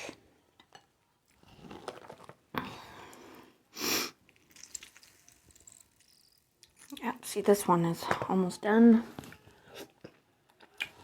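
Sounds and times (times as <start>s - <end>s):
person chewing food: 0.0s - 3.5s, 4.1s - 7.0s, 9.2s - 11.0s.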